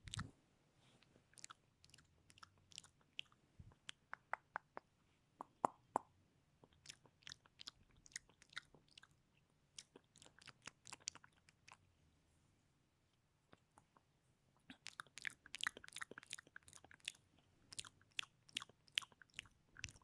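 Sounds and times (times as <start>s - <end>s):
mouth clicks: 0.0s - 0.3s, 1.4s - 9.1s, 14.7s - 20.0s.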